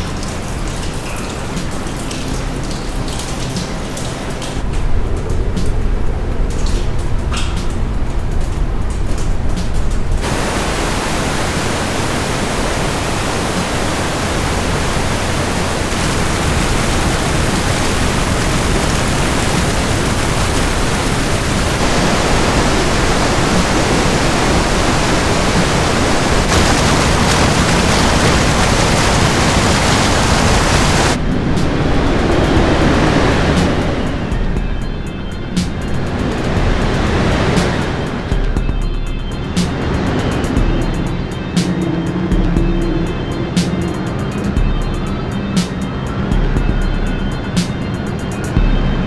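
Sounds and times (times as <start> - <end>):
roar of rushing water in cave: 0.0 - 34.6, 35.9 - 38.4.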